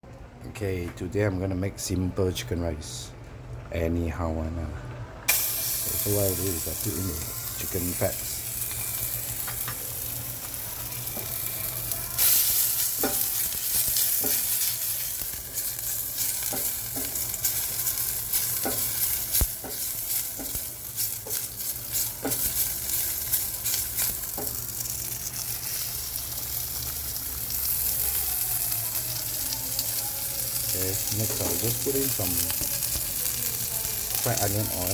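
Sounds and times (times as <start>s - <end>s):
fat sizzling in a pot: 5.3s - 34.9s
utensil stirring and tapping pot: 12.8s - 24.6s.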